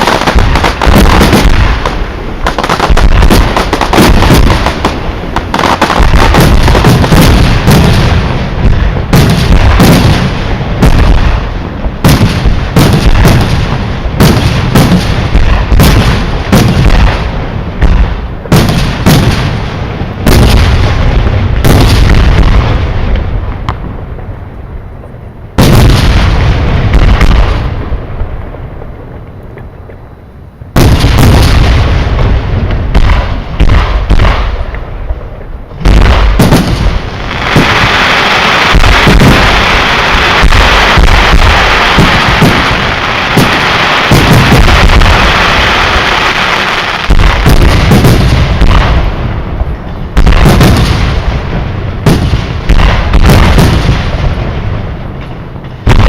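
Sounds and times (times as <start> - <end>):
rolling echo of bangs: 0.0 - 24.2, 25.6 - 29.2, 30.8 - 38.1, 38.7 - 45.6, 47.0 - 56.0
fireworks crackling: 0.0 - 56.0
firework shells bursting: 30.7 - 56.0.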